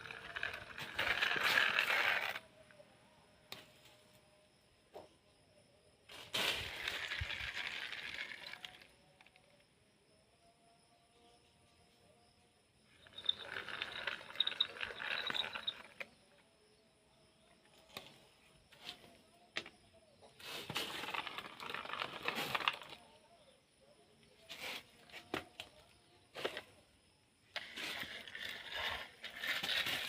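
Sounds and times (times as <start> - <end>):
plastic toys rustling and scraping: 0.0 - 2.4, 6.1 - 9.3, 13.0 - 16.1, 20.3 - 23.1, 27.5 - 30.0.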